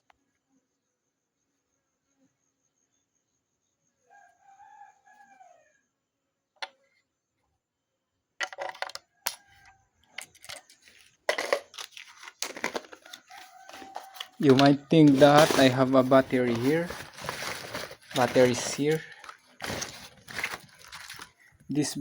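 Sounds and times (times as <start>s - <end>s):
rooster crowing: 4.1s - 5.7s, 13.0s - 15.6s
small objects clicking and clattering: 8.4s - 9.4s, 10.1s - 21.5s.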